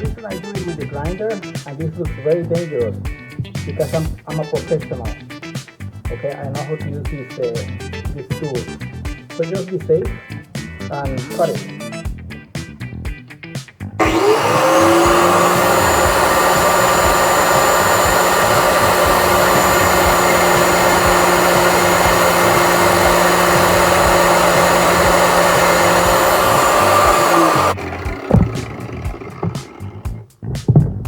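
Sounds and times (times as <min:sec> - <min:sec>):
angle grinder cutting: 0:14.0 - 0:30.2.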